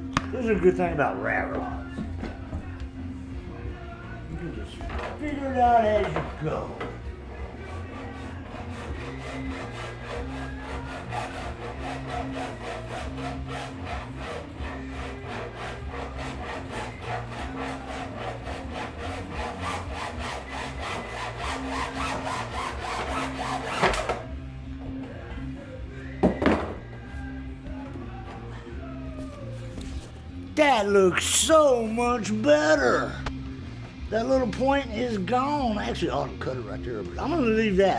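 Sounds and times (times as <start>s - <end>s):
saw cutting back and forth: 5.4s - 24.2s.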